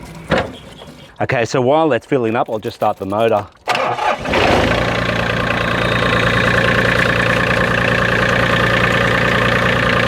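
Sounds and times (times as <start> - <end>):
tractor diesel engine idling: 3.7 - 10.0.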